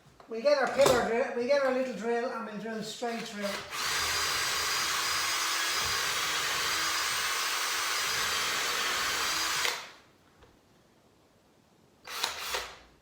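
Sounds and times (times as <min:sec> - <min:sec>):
electric drill boring through wood: 0:03.1 - 0:10.0, 0:12.1 - 0:12.8.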